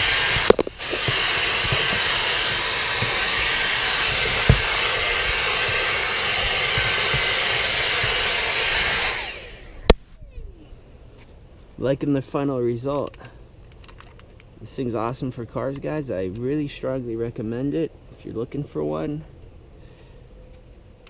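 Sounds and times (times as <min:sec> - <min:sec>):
vacuum motor winding down: 0:00.0 - 0:09.9
handheld vacuum whining: 0:00.0 - 0:10.0.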